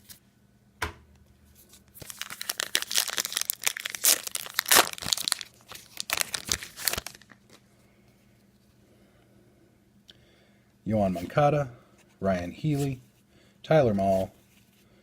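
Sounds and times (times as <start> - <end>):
card pack wrapper crinkling: 1.7 - 7.6.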